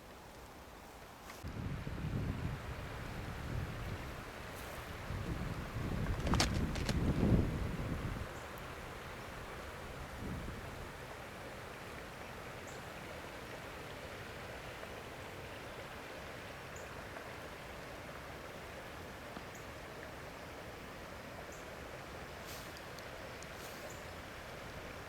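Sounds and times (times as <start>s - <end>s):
rushing outdoor background noise: 0.0s - 25.0s
faint high ticks: 22.5s - 24.8s.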